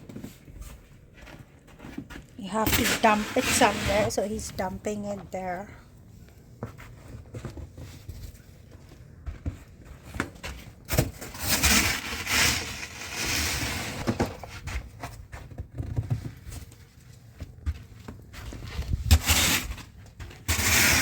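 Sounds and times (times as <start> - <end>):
shovel scraping through snow: 2.7 - 4.5, 11.3 - 14.0, 19.1 - 19.8, 20.5 - 21.0
small knocks and bumps: 14.0 - 19.2.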